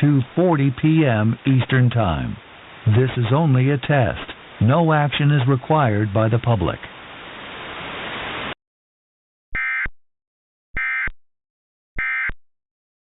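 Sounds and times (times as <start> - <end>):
steady hiss: 0.0 - 8.6.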